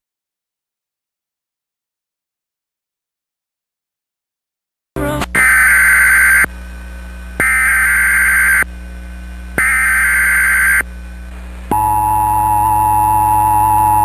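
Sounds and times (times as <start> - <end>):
buzzy data bursts: 5.4 - 13.4
two-tone attention signal: 11.7 - 14.0.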